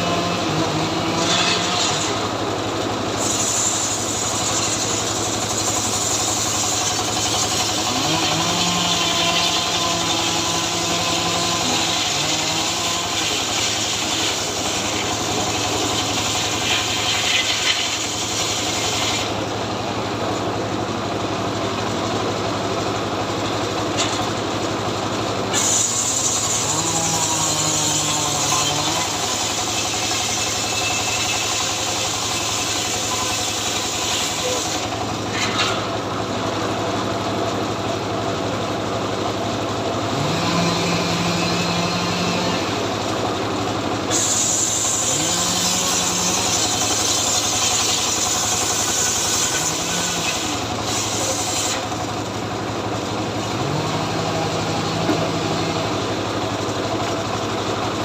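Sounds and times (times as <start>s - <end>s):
chainsaw engine running: 0.0s - 58.0s.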